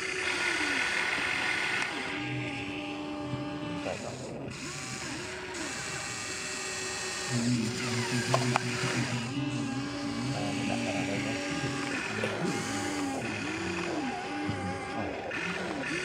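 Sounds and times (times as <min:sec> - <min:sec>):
small electric motors whirring: 0:00.0 - 0:16.0
clicks: 0:07.7 - 0:09.3.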